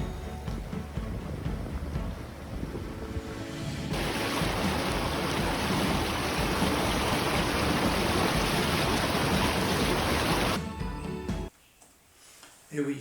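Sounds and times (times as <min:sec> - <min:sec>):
river water rushing over rapids: 0:03.9 - 0:10.6.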